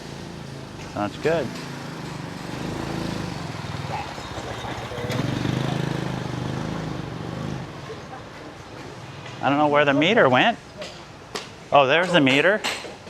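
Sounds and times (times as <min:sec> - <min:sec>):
vehicle engine humming: 0:00.0 - 0:10.2.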